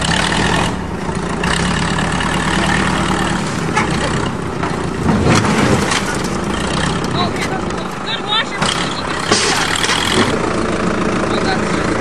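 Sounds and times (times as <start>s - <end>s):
heavy engine running: 0.0s - 12.0s.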